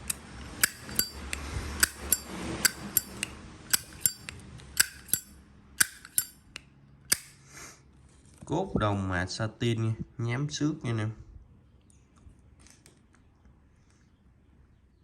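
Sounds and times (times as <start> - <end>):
lighter lid clicking open and shut: 0.0 - 6.4, 7.1 - 7.3.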